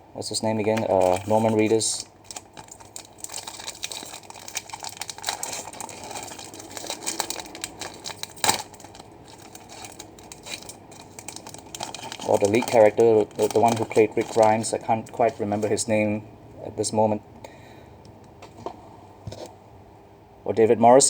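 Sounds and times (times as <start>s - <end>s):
crinkly wrapping being pulled open: 0.6s - 15.8s.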